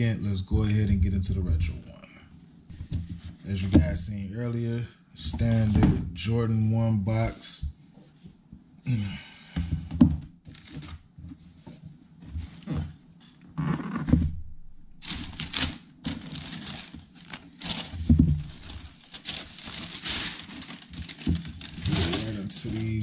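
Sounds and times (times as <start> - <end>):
tissue paper crinkling: 15.0 - 23.0.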